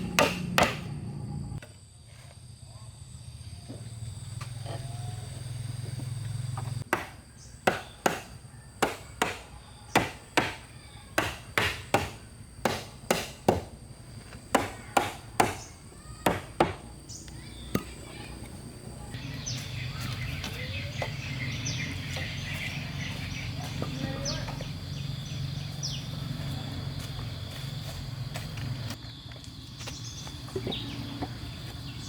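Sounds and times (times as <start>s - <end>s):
wood chopped with a blade: 0.0s - 0.9s, 6.9s - 13.8s, 14.4s - 16.9s
outdoor background hiss: 0.0s - 32.0s.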